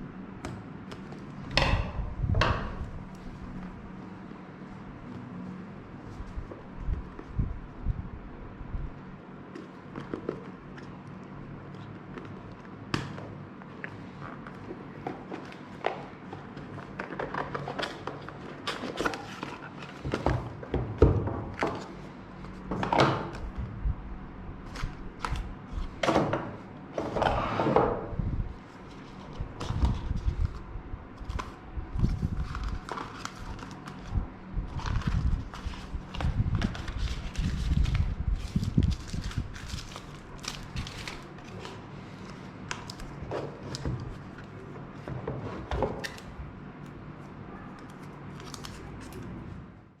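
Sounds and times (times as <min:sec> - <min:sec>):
packaging rustle: 0:31.2 - 0:44.5, 0:47.8 - 0:49.3.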